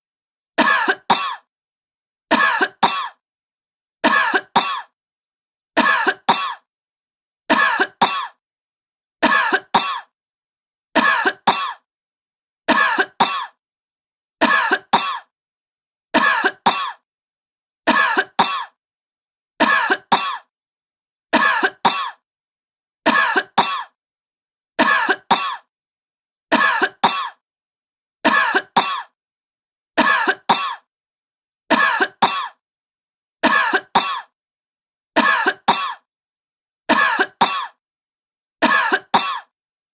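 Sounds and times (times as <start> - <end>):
woman coughing: 0.6 - 1.5, 2.3 - 3.2, 4.0 - 5.0, 5.8 - 6.7, 7.5 - 8.4, 9.2 - 10.1, 11.0 - 11.9, 12.7 - 13.6, 14.4 - 15.3, 16.2 - 17.0, 17.9 - 18.8, 19.6 - 20.5, 21.4 - 22.2, 23.1 - 24.0, 24.8 - 25.7, 26.6 - 27.4, 28.3 - 29.2, 30.0 - 30.9, 31.7 - 32.6, 33.4 - 34.4, 35.2 - 36.1, 36.9 - 37.8, 38.6 - 39.5.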